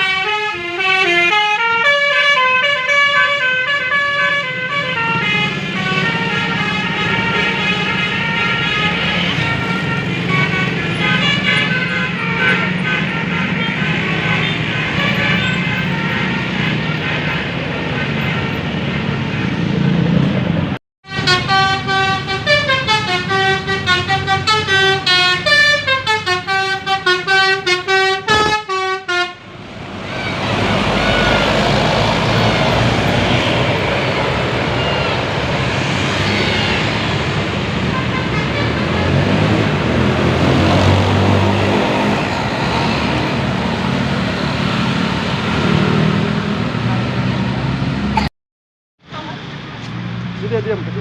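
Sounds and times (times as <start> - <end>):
musical bus horn tune: 0.0 - 19.3, 21.0 - 37.2, 37.8 - 42.2
passing vehicles road noise: 0.0 - 48.3, 49.0 - 51.0.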